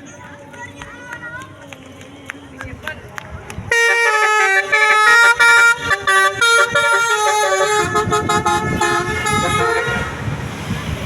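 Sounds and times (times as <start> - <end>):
multi-tone bus horn tune: 3.7 - 10.4.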